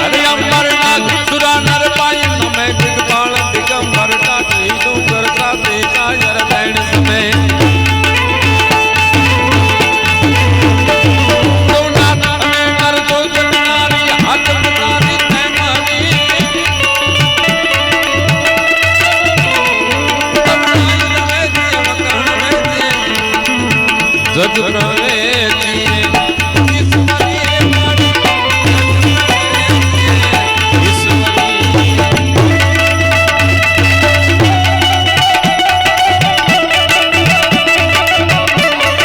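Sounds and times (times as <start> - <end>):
tabla drumming: 0.0 - 39.0.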